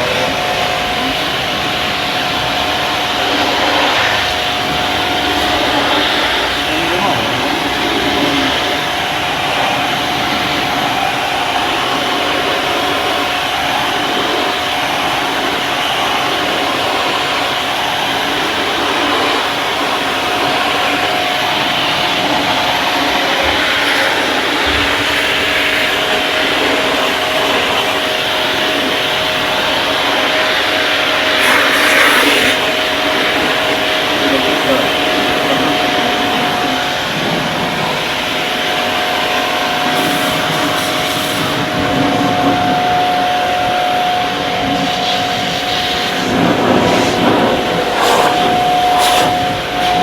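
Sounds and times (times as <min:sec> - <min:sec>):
loud rushing noise: 0:00.0 - 0:50.0
hiss: 0:00.1 - 0:50.0
motor whining: 0:41.5 - 0:50.0.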